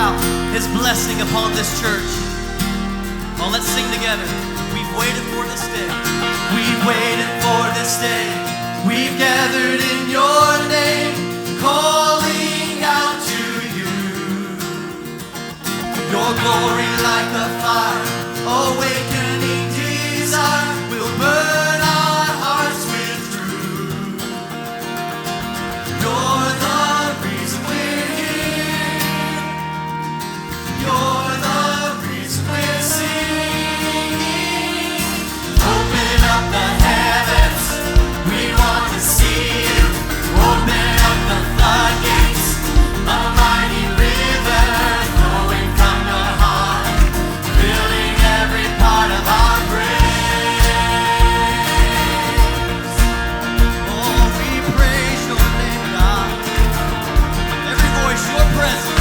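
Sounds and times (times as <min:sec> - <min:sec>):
choir singing worship song: 0:00.0 - 0:59.0
steady drum beat: 0:35.4 - 0:59.0.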